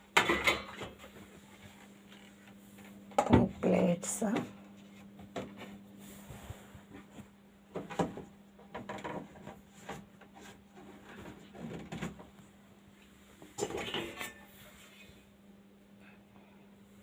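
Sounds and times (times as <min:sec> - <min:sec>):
plates clattering in dishwasher rack: 0:00.2 - 0:01.0, 0:13.6 - 0:14.4.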